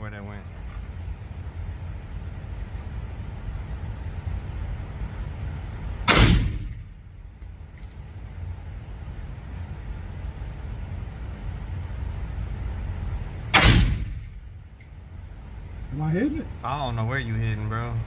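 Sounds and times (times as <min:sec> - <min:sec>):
steady low rumble: 0:00.9 - 0:18.0
suppressed gunshot: 0:06.1 - 0:06.8, 0:13.6 - 0:14.3
light metallic clinks: 0:06.7 - 0:08.4, 0:14.2 - 0:15.8.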